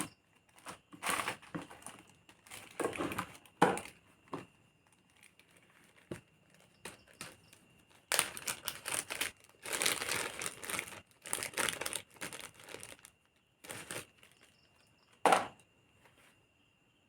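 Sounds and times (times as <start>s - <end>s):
packaging crinkling and rustling: 0.5s - 4.0s, 4.8s - 14.6s.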